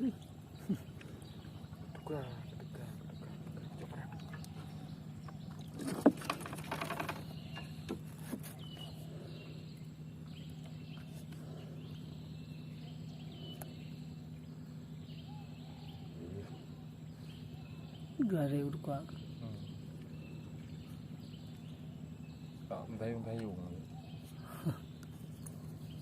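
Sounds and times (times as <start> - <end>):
faint bird or insect calls: 0.0 - 26.0
steady low hum: 0.0 - 26.0
clicks and rattling: 5.8 - 7.3.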